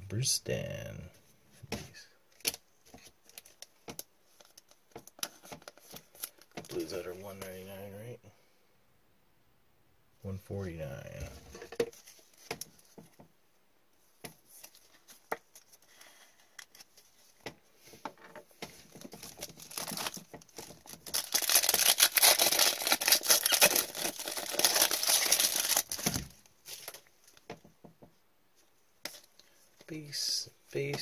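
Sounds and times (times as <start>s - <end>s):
wrappers tearing and crinkling: 19.1s - 27.0s.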